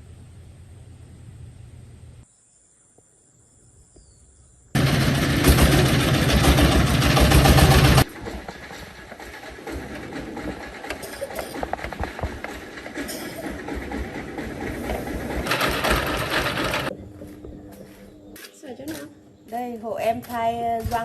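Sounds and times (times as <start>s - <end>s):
diesel engine running loud: 4.8s - 16.9s.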